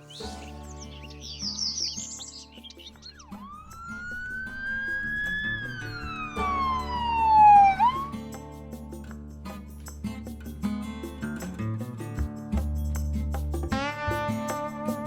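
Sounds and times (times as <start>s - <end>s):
background music: 0.0s - 15.0s
siren wailing: 3.1s - 8.2s.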